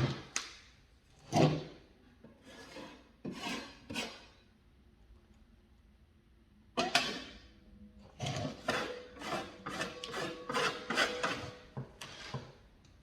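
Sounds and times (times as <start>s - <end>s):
putty knife scraping wood: 2.4s - 4.3s, 8.2s - 12.6s.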